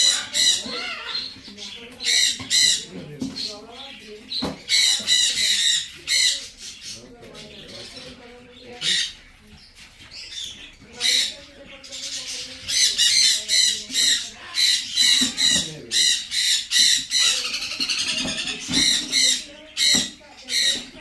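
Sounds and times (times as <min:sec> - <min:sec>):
macaw squawking: 0:00.0 - 0:01.4, 0:12.0 - 0:21.0.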